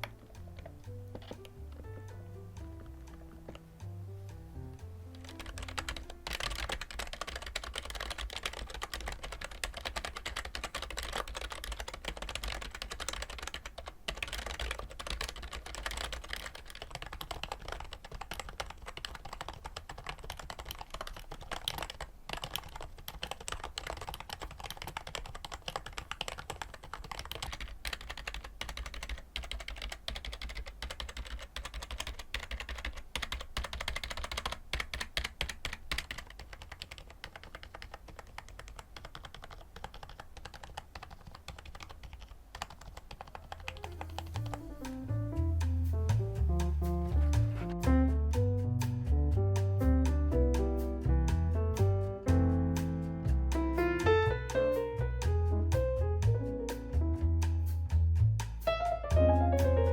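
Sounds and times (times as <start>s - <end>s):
music: 0.0s - 7.4s, 43.6s - 59.9s
fast typing on a keyboard: 5.1s - 45.0s.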